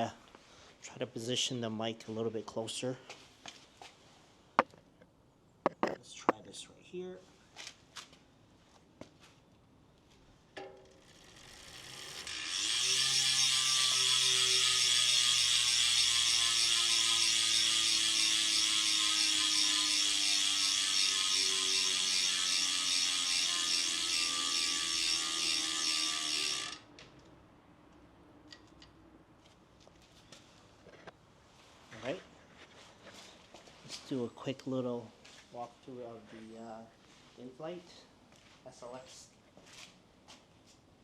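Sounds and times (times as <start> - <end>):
bicycle freehub ratchet buzz: 10.9 - 26.9.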